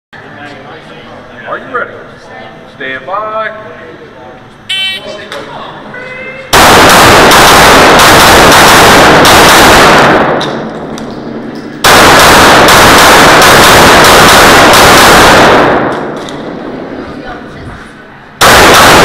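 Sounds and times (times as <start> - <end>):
pistol shots echoing indoors: 6.5 - 16.9, 18.4 - 19.0.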